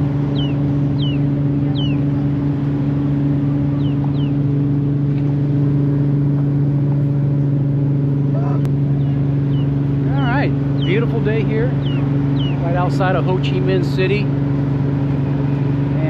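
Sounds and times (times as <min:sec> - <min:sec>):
ferry engine droning: 0:00.0 - 0:16.0
chickens chirping: 0:08.9 - 0:13.5.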